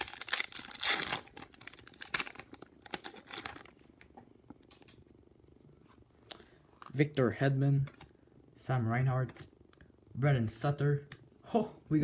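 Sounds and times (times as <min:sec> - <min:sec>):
wrapper crinkled and torn open: 0:00.0 - 0:03.8.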